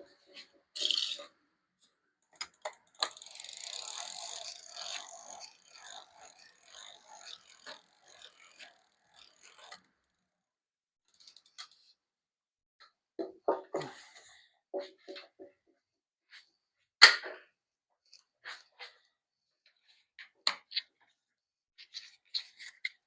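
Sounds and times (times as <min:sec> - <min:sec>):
rapid ratcheting clicks: 0:02.3 - 0:10.4, 0:11.1 - 0:11.8.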